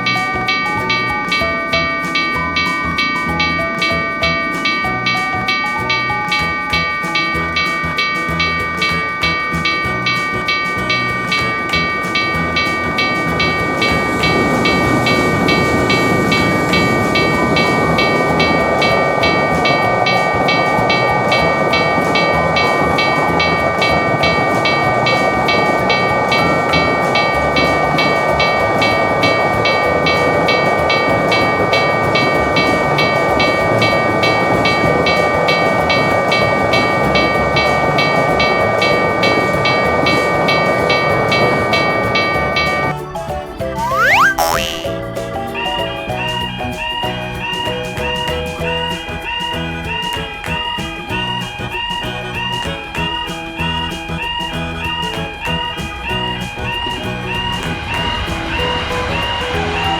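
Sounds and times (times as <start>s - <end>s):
railroad crossing alarm ringing: 0.0s - 42.9s
passing train rumble: 0.0s - 43.9s, 44.8s - 59.9s.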